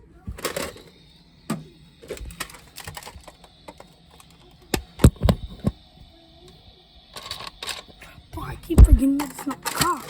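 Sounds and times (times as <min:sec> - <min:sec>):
toy blaster plastic clicks: 0:09.2 - 0:10.0.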